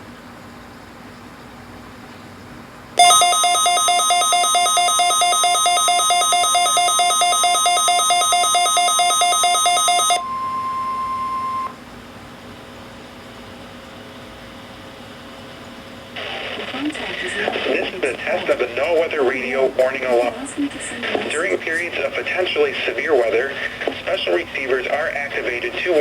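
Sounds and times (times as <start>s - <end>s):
pulsing electronic beep alarm: 3.0s - 11.7s
steady single alarm tone: 3.0s - 11.8s
faint radio hiss: 16.2s - 26.0s.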